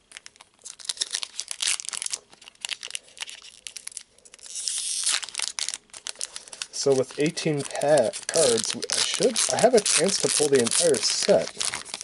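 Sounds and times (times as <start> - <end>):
foil wrapper crinkling: 0.0 - 12.0
foil wrapper tearing: 0.1 - 12.0.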